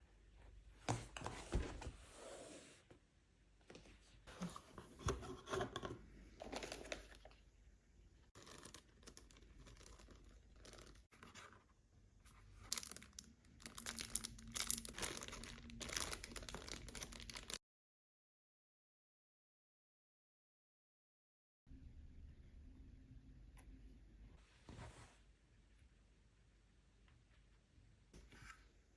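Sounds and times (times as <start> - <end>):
plastic crinkling: 8.4 - 11.1, 12.5 - 17.6.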